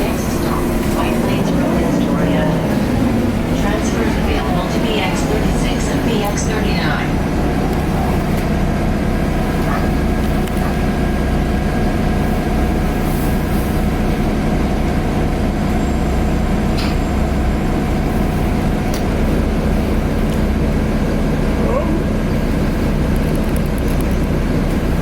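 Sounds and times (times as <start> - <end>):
thin engine whine: 0.0 - 21.2
bus diesel engine drone: 0.0 - 25.0.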